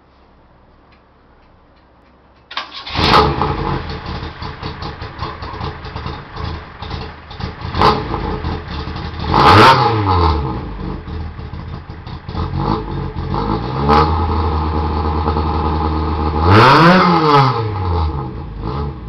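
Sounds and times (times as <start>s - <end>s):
car engine idling: 2.5s - 9.7s, 10.3s - 13.6s
car engine starting: 2.5s - 19.0s
car engine revving: 2.6s - 19.0s.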